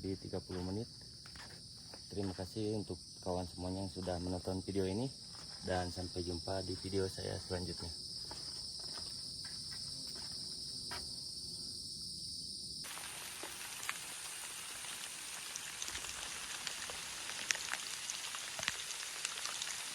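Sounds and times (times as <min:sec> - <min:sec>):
night insects trilling: 0:00.0 - 0:19.9
rain falling: 0:12.8 - 0:19.9
raindrop ticks: 0:15.5 - 0:19.8.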